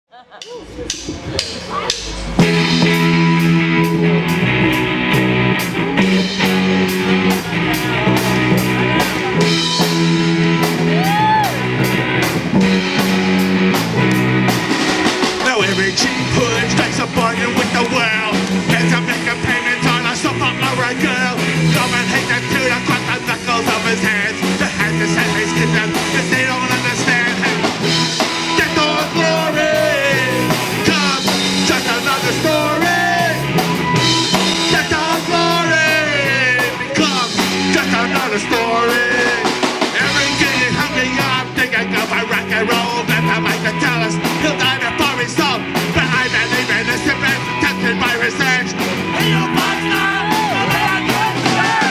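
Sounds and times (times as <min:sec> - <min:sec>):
loud punk rock band: 0:00.4 - 0:51.9
person singing: 0:15.4 - 0:33.6, 0:34.4 - 0:51.9.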